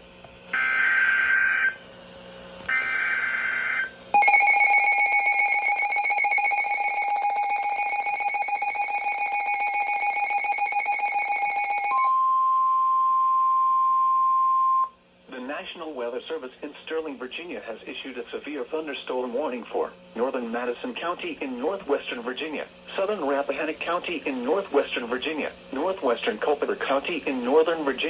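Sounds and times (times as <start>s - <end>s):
pulsing attention tone: 4.2s - 12.1s.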